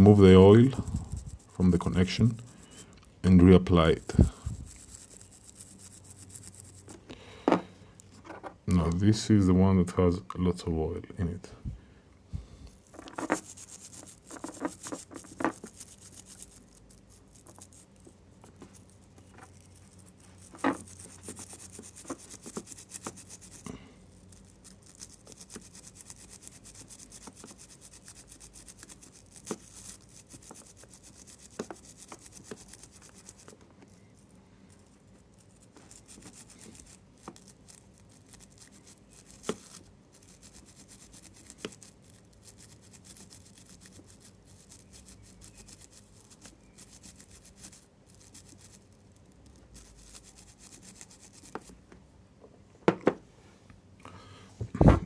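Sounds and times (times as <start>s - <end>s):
toothbrush scrubbing: 0.0s - 2.9s, 3.7s - 7.0s, 12.7s - 51.7s.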